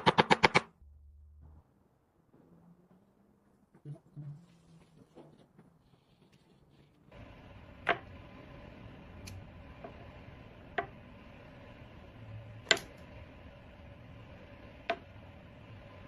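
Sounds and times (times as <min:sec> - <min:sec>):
wood lathe humming: 0:07.1 - 0:16.0.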